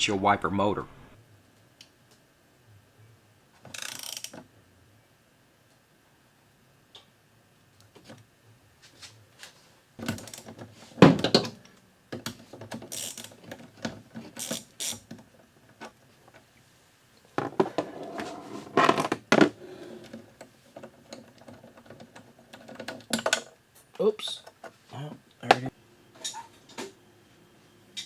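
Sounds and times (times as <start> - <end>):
ratchet wrench clicking: 3.7 - 4.3, 12.9 - 13.3.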